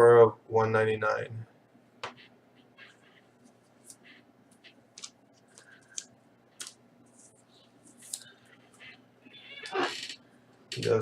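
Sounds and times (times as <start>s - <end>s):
trading cards being handled: 2.0s - 9.0s.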